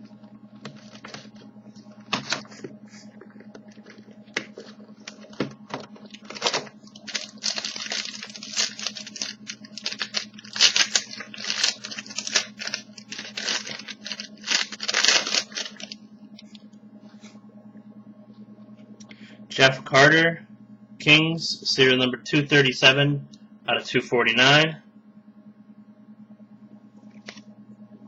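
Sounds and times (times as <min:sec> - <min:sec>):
plastic wrapping tearing and crinkling: 0:06.0 - 0:16.0.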